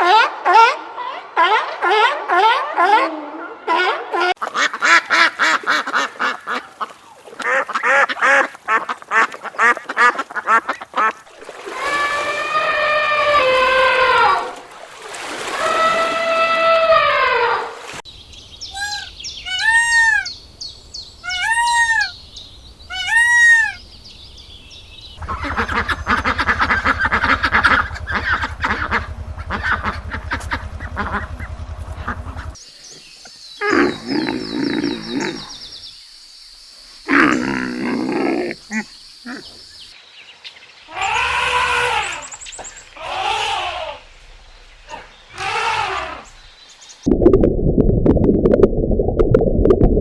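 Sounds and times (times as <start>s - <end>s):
pitched animal calls: 18.6s - 20.4s, 21.2s - 22.2s, 22.9s - 23.8s, 33.6s - 35.7s, 37.0s - 39.9s, 40.9s - 42.4s
rough roar-like animal calls: 33.6s - 35.7s, 37.1s - 39.7s, 40.9s - 42.3s.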